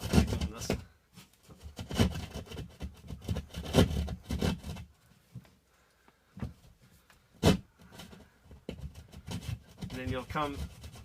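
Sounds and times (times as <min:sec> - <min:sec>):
hand saw cutting drywall: 0:00.0 - 0:00.8, 0:01.6 - 0:04.9, 0:07.4 - 0:11.0.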